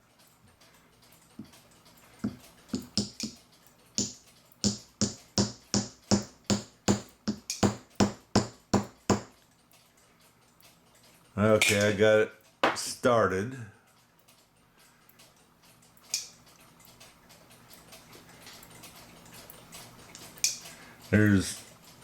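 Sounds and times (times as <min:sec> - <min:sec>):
small hammer tapping metal gear: 0:02.2 - 0:09.4.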